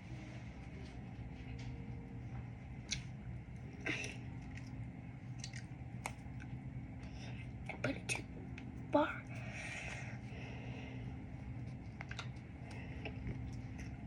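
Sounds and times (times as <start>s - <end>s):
low hum: 0.0s - 14.0s
squishy noises: 2.7s - 8.6s.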